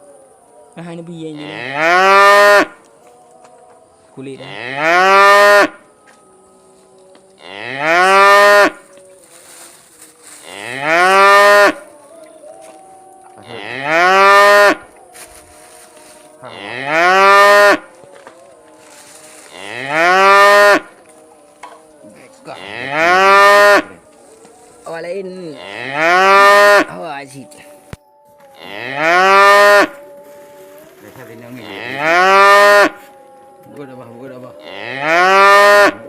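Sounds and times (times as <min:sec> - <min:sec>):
cow mooing: 0:01.4 - 0:02.8, 0:04.3 - 0:05.9, 0:07.4 - 0:08.8, 0:10.4 - 0:11.9, 0:13.3 - 0:15.0, 0:16.4 - 0:18.3, 0:19.4 - 0:24.2, 0:25.3 - 0:27.0, 0:28.5 - 0:30.1, 0:31.3 - 0:33.7, 0:34.3 - 0:36.0.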